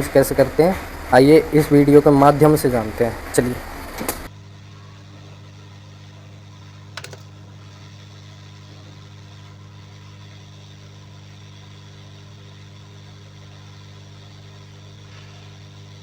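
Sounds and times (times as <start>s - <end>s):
low machine hum: 0.0s - 16.0s
clicks: 3.2s - 4.3s, 6.9s - 7.4s.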